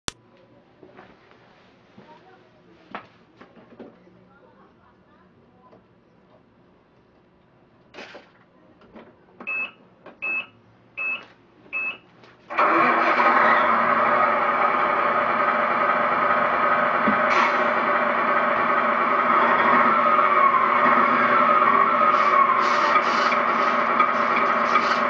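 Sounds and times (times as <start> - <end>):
loud steady engine: 12.5 - 25.0.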